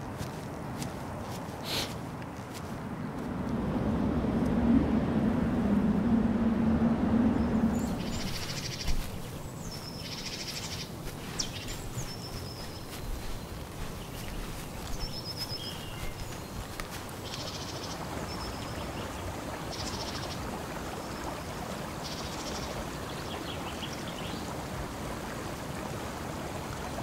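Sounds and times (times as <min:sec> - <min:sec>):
steady rushing background: 0:02.8 - 0:17.3
low hum: 0:02.9 - 0:09.7
birds chirping and trilling: 0:07.2 - 0:20.4.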